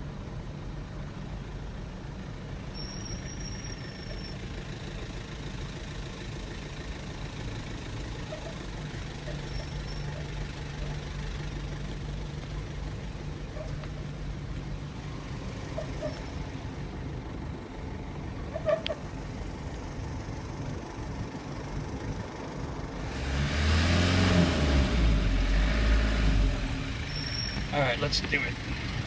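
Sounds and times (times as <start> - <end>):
car engine running: 0.0 - 29.0.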